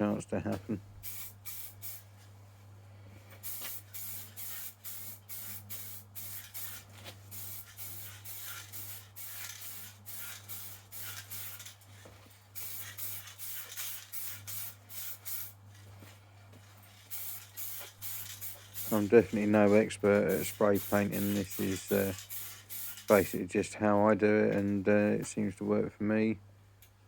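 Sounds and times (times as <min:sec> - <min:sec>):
spray paint can hissing: 0:01.0 - 0:02.1, 0:03.4 - 0:11.8, 0:12.6 - 0:15.6, 0:17.0 - 0:23.4.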